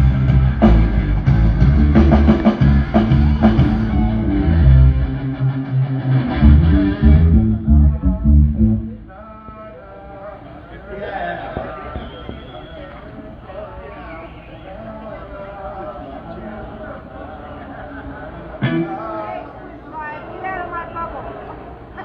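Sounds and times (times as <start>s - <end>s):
live band playing loudly: 0.0s - 9.0s
heavy bass guitar line: 0.0s - 9.2s, 18.6s - 19.3s.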